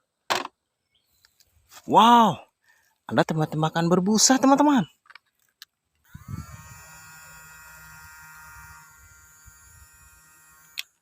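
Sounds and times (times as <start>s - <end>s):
small electric motor whirring: 6.0s - 11.0s.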